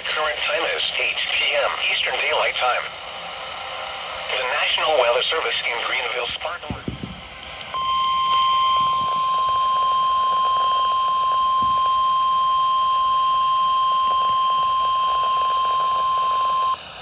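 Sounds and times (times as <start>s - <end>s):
faint radio static: 0.0s - 17.0s
steady alarm beep: 7.6s - 16.8s.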